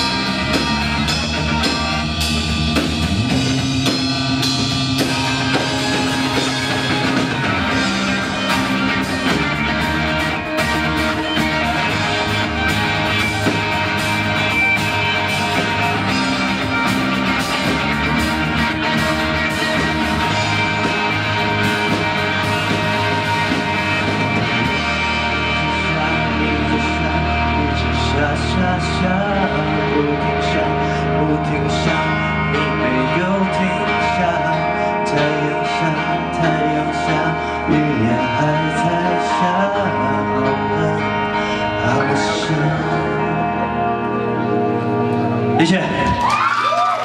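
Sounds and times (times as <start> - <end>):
drum kit with cymbal hits: 0.0 - 27.5
sustained guitar chords: 0.0 - 46.0.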